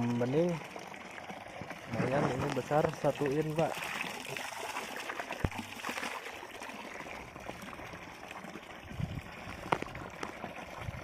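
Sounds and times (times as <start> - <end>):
water running from pump outlet: 0.0 - 11.0.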